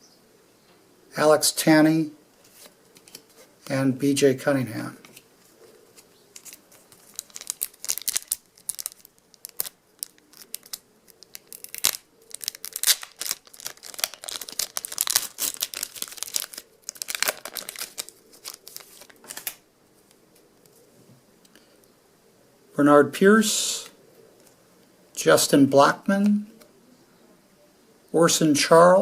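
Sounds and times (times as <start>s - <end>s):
wrapper tearing and crinkling: 6.4s - 19.6s.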